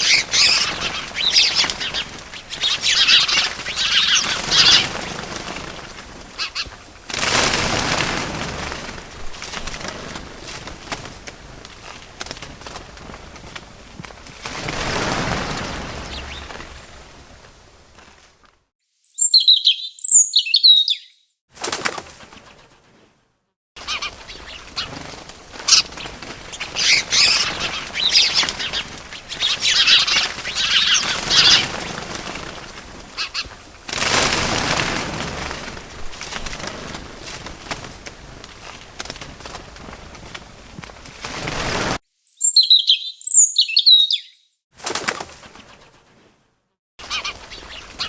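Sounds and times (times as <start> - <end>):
small birds chirping: 0.0 - 6.7, 15.9 - 17.0, 18.9 - 21.3, 23.8 - 33.7, 42.1 - 44.5, 47.0 - 48.0
wings flapping: 0.0 - 18.6, 21.5 - 23.2, 23.8 - 42.0, 44.8 - 46.4, 47.0 - 48.0.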